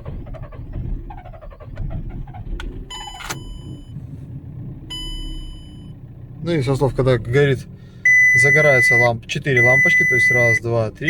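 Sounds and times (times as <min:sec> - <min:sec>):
diesel engine running: 0:00.0 - 0:11.0
starter cranking diesel engine: 0:00.0 - 0:11.0
dashboard warning chime beeping: 0:02.9 - 0:03.9, 0:04.9 - 0:06.0, 0:08.0 - 0:11.0.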